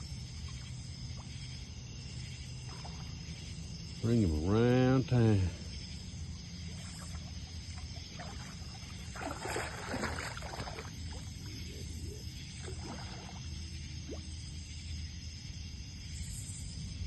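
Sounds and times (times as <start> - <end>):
water splashing: 6.6 - 14.4.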